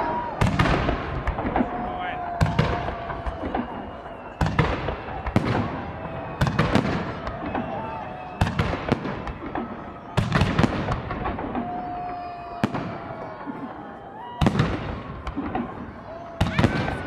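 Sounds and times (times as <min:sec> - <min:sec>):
fireworks crackling and rumble: 0:00.0 - 0:17.0
fireworks sharp bangs: 0:00.0 - 0:17.0.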